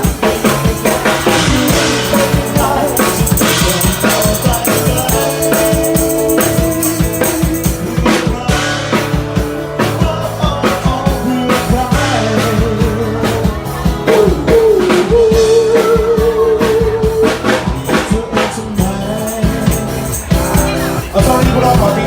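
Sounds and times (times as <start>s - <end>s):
live rock band playing: 0.0s - 22.0s.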